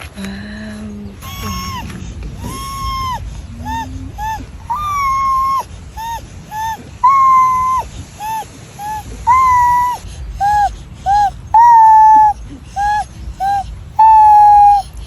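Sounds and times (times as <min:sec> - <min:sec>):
whistle-like melody: 0:07.0 - 0:14.8.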